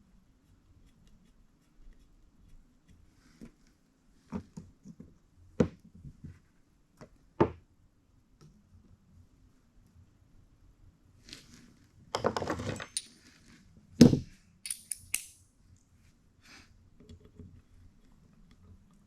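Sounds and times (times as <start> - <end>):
metal tools clicking on workbench: 12.2 - 13.2, 14.6 - 15.4.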